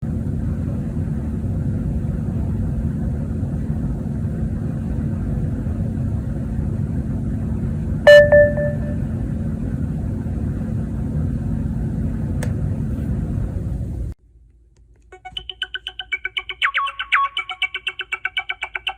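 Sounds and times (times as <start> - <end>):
low background rumble: 0.0 - 14.6
faint constant hum: 0.0 - 18.9
loud electronic chime: 8.1 - 9.1.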